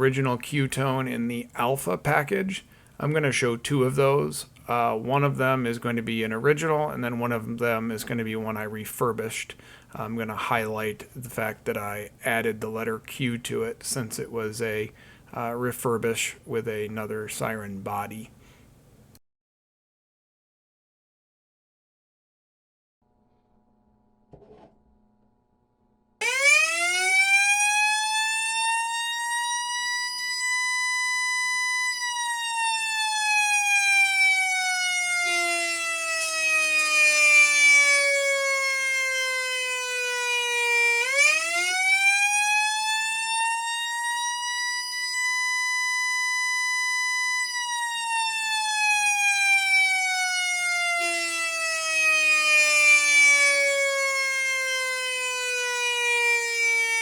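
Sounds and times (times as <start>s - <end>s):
electronic siren winding up and down: 26.2s - 57.0s.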